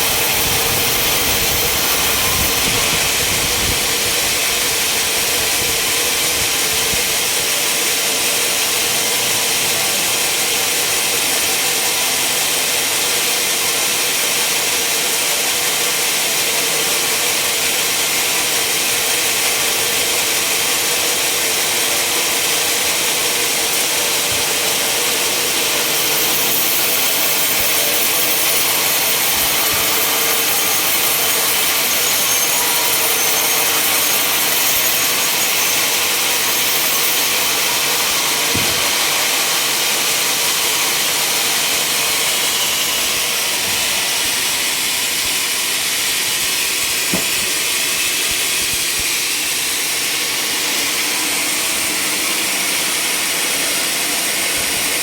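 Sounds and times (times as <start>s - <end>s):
sawmill saw cutting timber: 0.0s - 55.0s.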